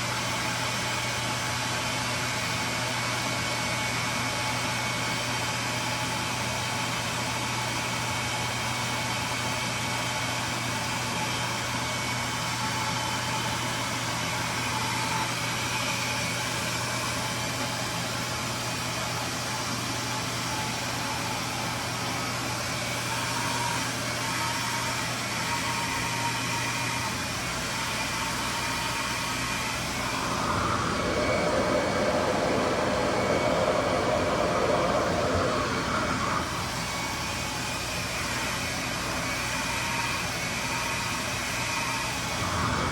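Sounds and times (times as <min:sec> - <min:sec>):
hair dryer running: 0:09.8 - 0:42.9.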